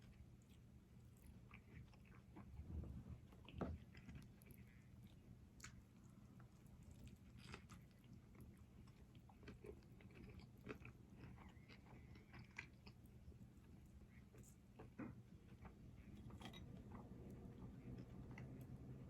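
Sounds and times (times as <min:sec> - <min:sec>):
person chewing food: 0:00.0 - 0:02.6, 0:03.2 - 0:19.0.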